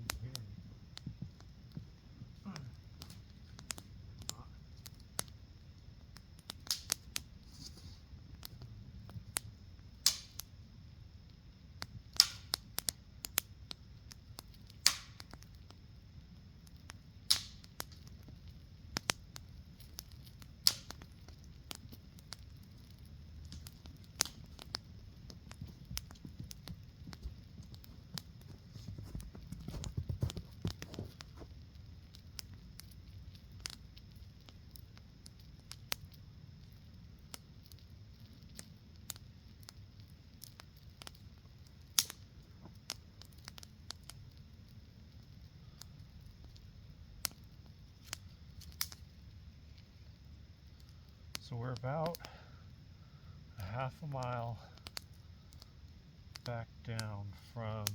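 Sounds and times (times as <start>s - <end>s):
faint low rumble: 0.0s - 57.9s
sharp clicks and snaps: 2.4s - 5.4s, 6.0s - 7.4s, 8.4s - 10.5s, 11.8s - 15.8s, 16.6s - 49.9s, 50.6s - 52.4s, 53.6s - 55.7s, 56.3s - 57.1s.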